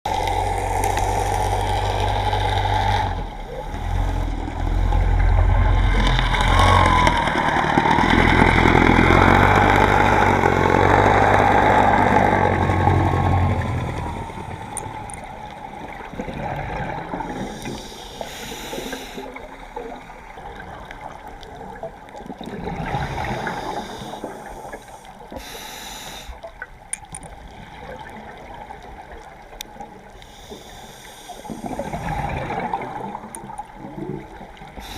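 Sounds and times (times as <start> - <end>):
underwater low rumble: 0.0 - 34.9
diver's exhaled bubbles: 0.1 - 17.6, 19.3 - 24.4, 31.5 - 34.9.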